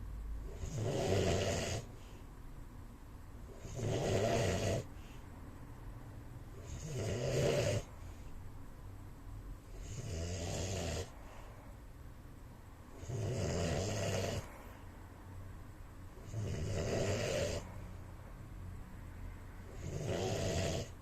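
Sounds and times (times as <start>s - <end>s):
man snoring: 0.5s - 1.9s, 3.5s - 4.9s, 6.6s - 7.9s, 9.7s - 11.2s, 13.0s - 14.5s, 16.2s - 17.6s, 19.7s - 21.0s
quiet breathing: 1.8s - 2.6s, 4.7s - 6.8s, 7.8s - 8.7s, 10.9s - 12.0s, 14.0s - 15.4s.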